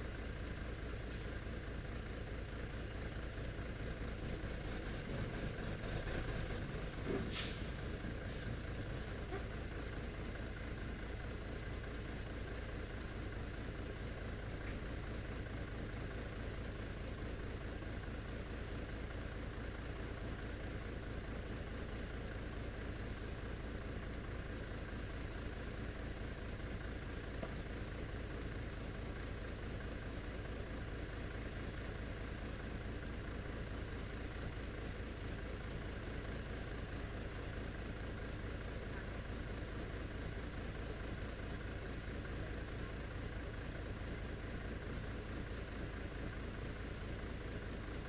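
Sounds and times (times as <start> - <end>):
diesel truck engine idling: 0.0 - 48.0
short sharp hiss: 7.2 - 9.1.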